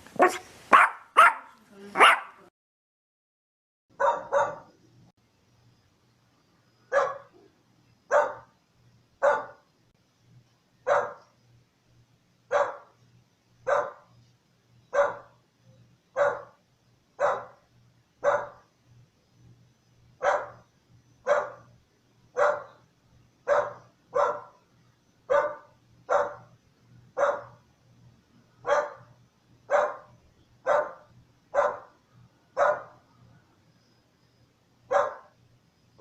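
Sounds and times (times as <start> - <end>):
dog barking: 0.2 - 2.4, 4.0 - 4.7, 6.9 - 7.5, 8.1 - 8.5, 9.2 - 9.6, 10.8 - 11.3, 12.5 - 13.0, 13.7 - 14.1, 14.9 - 15.3, 16.2 - 16.6, 17.2 - 17.6, 18.2 - 18.7, 20.2 - 20.6, 21.3 - 21.7, 22.4 - 22.8, 23.5 - 24.6, 25.3 - 26.5, 27.2 - 27.6, 28.6 - 29.1, 29.7 - 32.0, 32.6 - 33.0, 34.9 - 35.3.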